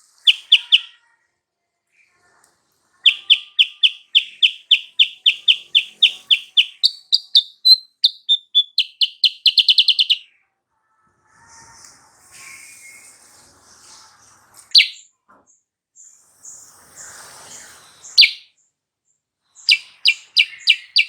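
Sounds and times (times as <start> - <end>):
bird singing chirps and trill: 0.1 - 1.0, 3.1 - 10.3, 14.8 - 15.0, 18.2 - 18.5, 19.7 - 21.0.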